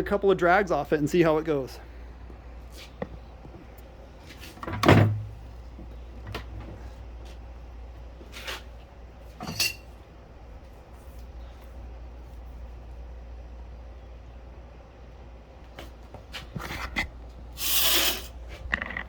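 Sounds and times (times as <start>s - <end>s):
handling knocks and clicks: 18.6s - 19.0s.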